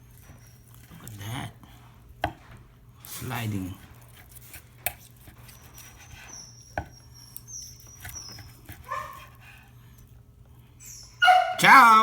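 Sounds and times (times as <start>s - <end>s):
dog squeaking and whining: 5.4s - 9.5s, 10.8s - 12.0s.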